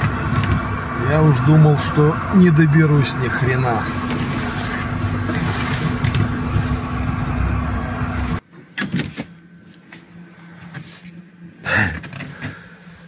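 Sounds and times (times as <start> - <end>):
car engine running: 0.0 - 8.4.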